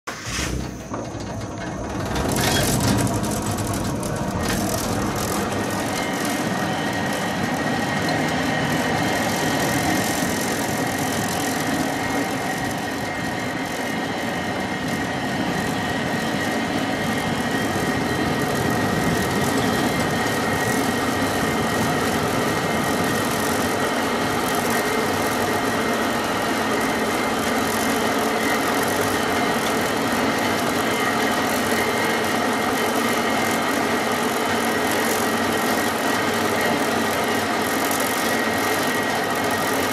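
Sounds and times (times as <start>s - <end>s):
cable car running on cable: 0.1s - 39.9s
constant high whine: 0.1s - 39.9s.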